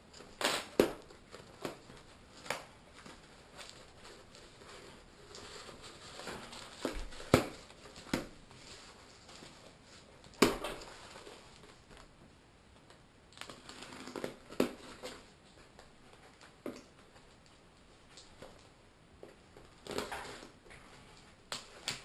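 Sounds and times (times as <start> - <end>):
plastic wrapping crinkling: 0.1 - 12.1.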